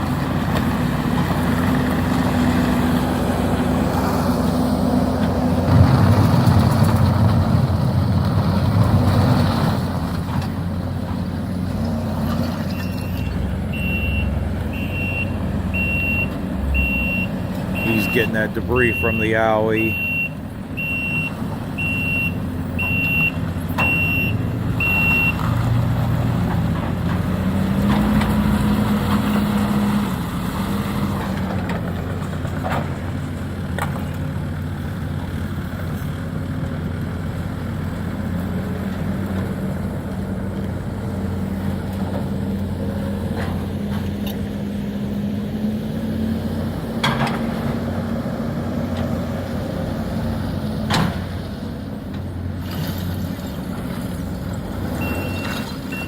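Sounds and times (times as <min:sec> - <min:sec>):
diesel excavator engine under load: 0:00.0 - 0:56.0
backup alarm beeping: 0:12.9 - 0:25.3.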